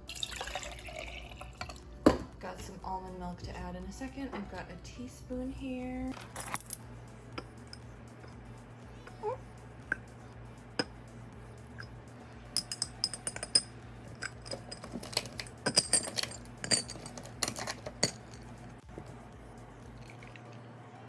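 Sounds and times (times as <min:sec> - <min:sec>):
teaspoon clinking against glass: 0:12.6 - 0:18.5.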